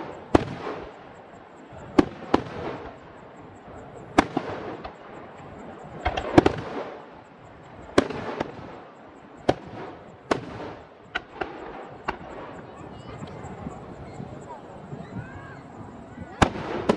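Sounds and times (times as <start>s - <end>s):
firework shells bursting: 0.0s - 1.2s, 1.9s - 3.2s, 4.1s - 13.4s, 16.4s - 16.9s.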